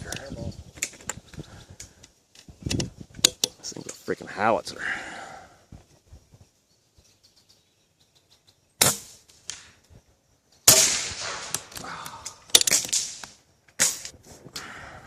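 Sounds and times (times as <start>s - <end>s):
air rifle firing: 10.7s - 11.8s.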